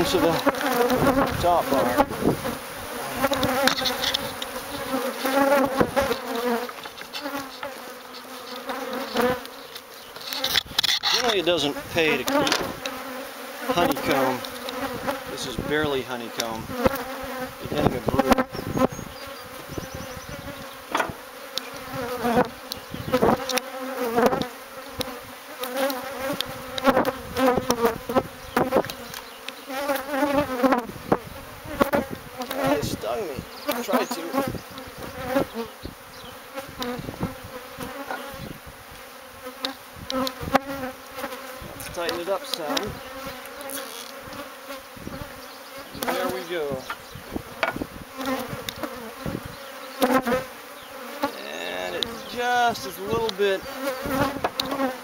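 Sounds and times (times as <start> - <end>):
bees buzzing: 0.0 - 55.0
knocks and clicks from hive handling: 12.2 - 13.0, 20.9 - 25.2, 46.0 - 48.8, 54.1 - 54.8.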